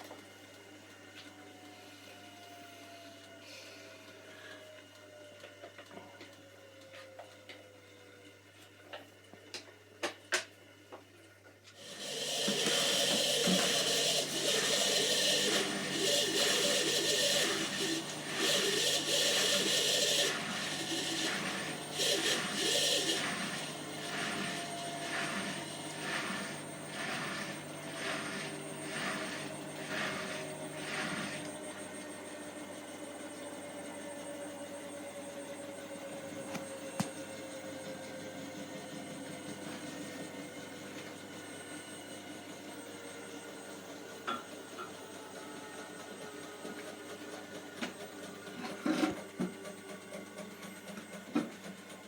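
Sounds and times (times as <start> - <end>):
washing machine running: 11.8 - 52.0.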